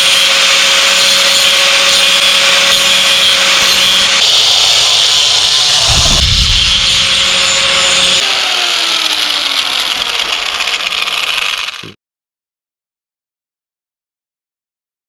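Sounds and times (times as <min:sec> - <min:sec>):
power tool grinding hiss: 0:00.0 - 0:12.0
faint falling whine: 0:05.6 - 0:08.2.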